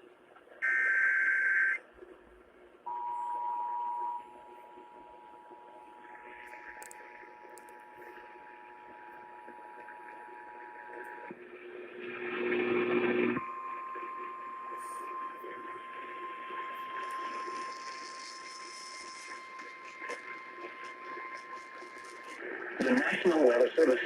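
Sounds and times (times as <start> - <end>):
garbled broadcast audio: 0.0 - 24.0
steady alarm tone: 13.3 - 22.4.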